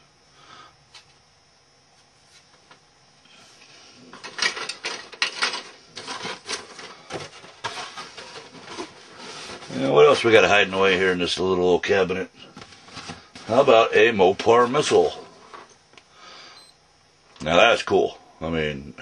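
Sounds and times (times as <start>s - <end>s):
rustling and rubbing of box: 4.2s - 10.5s, 12.5s - 13.8s.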